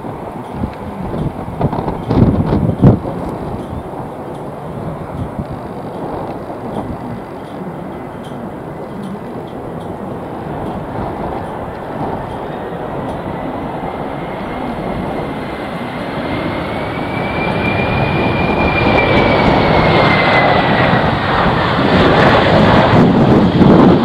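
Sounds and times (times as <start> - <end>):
high jet engine whine: 0.0 - 24.0
jet airliner passing: 0.0 - 24.0.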